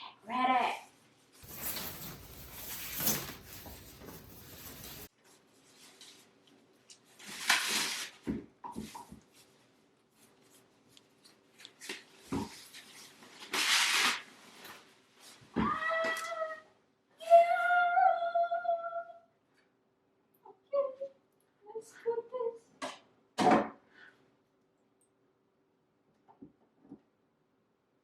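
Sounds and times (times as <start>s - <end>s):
packaging rustling: 1.4s - 5.1s.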